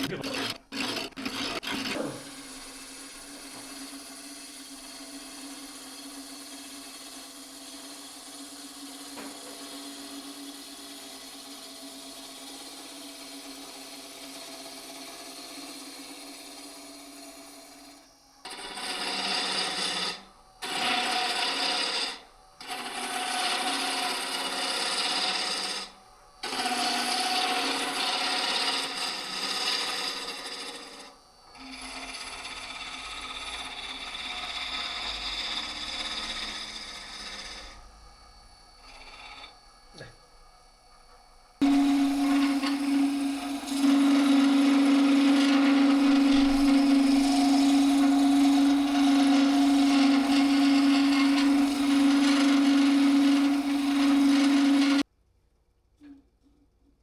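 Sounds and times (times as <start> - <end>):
tool rasping on spinning wood: 0.0 - 40.2, 41.6 - 55.1
lathe hum: 0.0 - 55.1.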